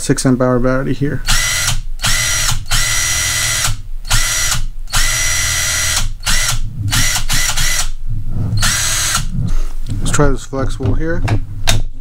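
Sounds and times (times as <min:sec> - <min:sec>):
power tool motor whining: 0:01.3 - 0:07.9, 0:08.6 - 0:09.3.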